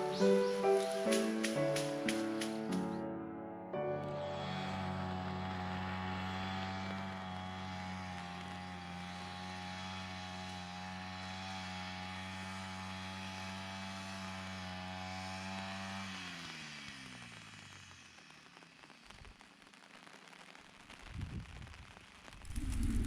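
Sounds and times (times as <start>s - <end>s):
machine motor humming: 4.0s - 6.4s.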